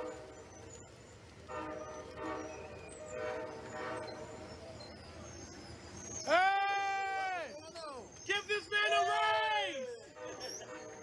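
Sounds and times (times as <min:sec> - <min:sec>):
low rumble of passing train: 0:00.0 - 0:06.2, 0:09.9 - 0:11.0
locomotive air horn blasts: 0:01.5 - 0:04.3.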